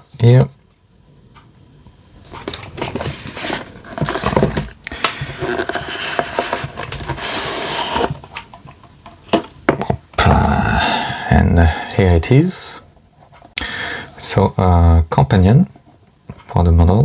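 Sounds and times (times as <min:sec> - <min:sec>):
packaging scraping and rustling: 0:02.4 - 0:08.4.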